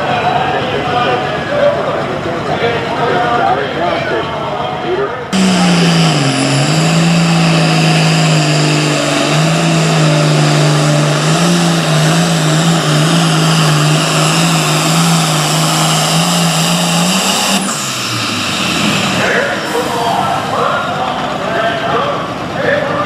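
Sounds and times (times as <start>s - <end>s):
tractor diesel engine running hard: 5.2s - 23.0s
high whine: 5.3s - 21.2s.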